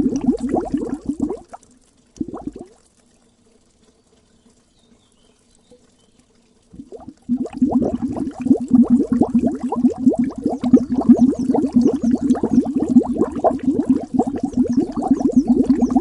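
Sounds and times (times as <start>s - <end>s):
water bubbling: 0.0s - 2.9s, 6.7s - 16.0s.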